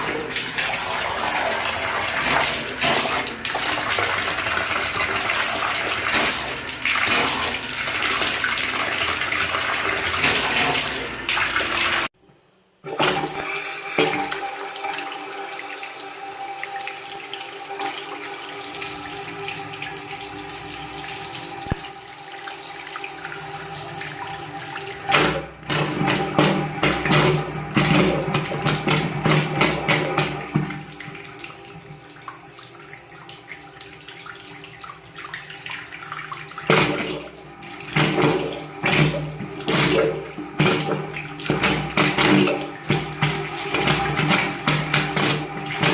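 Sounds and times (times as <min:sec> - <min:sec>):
water spurting from pipe: 0:22.5 - 0:45.9.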